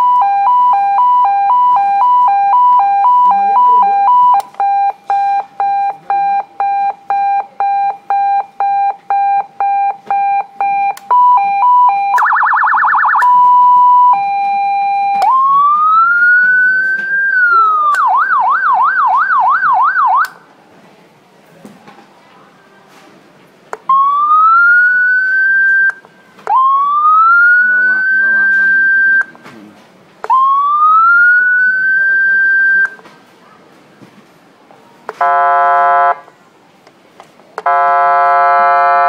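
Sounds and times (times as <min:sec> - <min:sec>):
electronic siren: 0:00.0 - 0:05.5, 0:11.0 - 0:20.3, 0:23.9 - 0:29.4, 0:30.2 - 0:33.0, 0:37.7 - 0:39.0.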